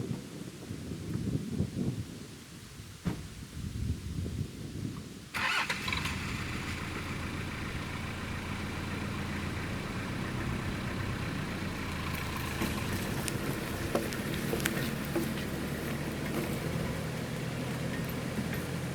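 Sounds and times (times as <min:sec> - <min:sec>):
truck engine starting and idling: 0:05.4 - 0:18.9.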